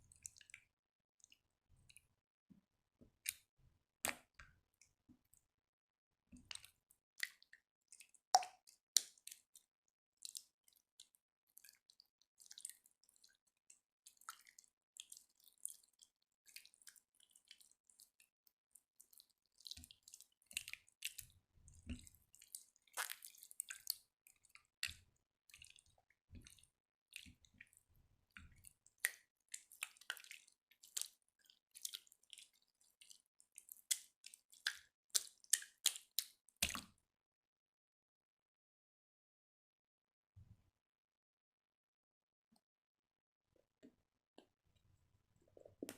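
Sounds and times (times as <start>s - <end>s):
slime squelching: 19.0s - 27.8s, 28.4s - 36.9s.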